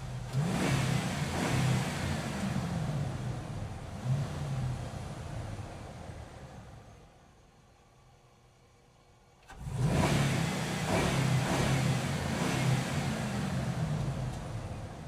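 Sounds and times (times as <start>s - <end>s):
large truck engine revving: 0.0s - 5.6s, 9.5s - 15.0s.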